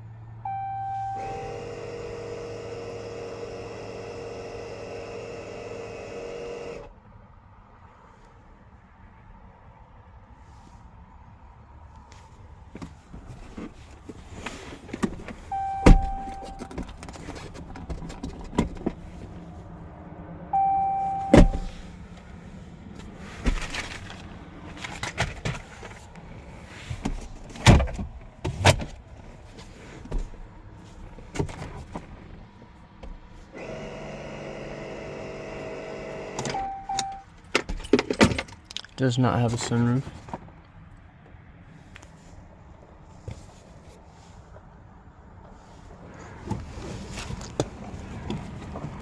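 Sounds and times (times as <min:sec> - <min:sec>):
short steady tones: 0:00.4 - 0:02.1, 0:15.5 - 0:16.8, 0:20.6 - 0:21.8
electric motor hum: 0:01.2 - 0:06.9
clicks and clunks of parts: 0:23.0 - 0:26.0, 0:36.3 - 0:39.0.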